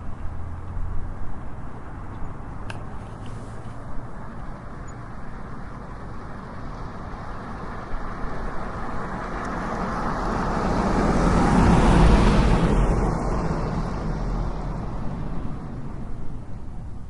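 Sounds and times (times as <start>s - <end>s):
street traffic rumble: 0.0s - 17.0s
vehicle passing close by: 6.5s - 16.6s.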